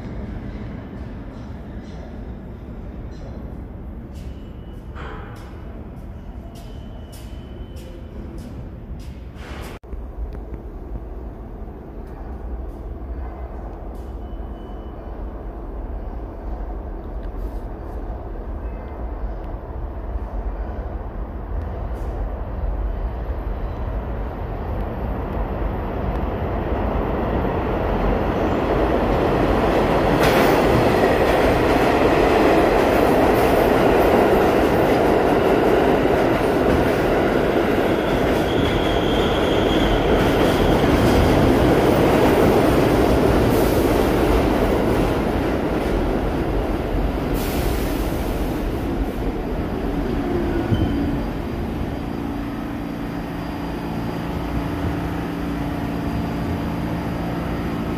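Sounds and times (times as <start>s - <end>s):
subway train rumbling on rails: 0.0s - 57.9s
high wheel squeal: 37.9s - 40.9s.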